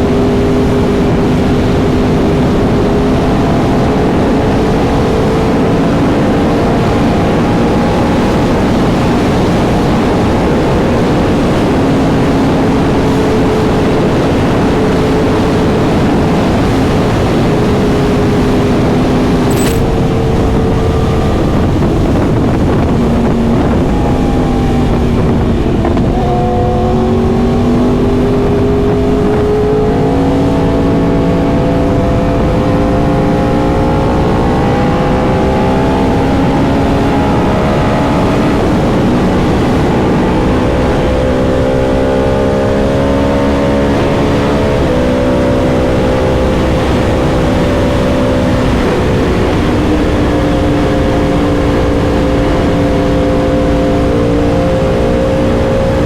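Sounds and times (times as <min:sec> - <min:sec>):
motorcycle engine running: 0:19.3 - 0:24.1.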